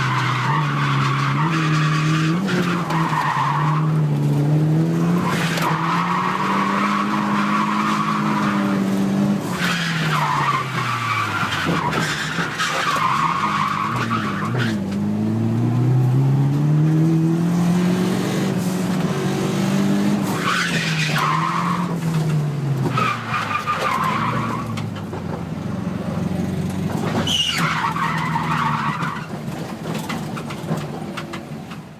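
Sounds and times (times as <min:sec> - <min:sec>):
car engine revving: 0:00.0 - 0:22.9.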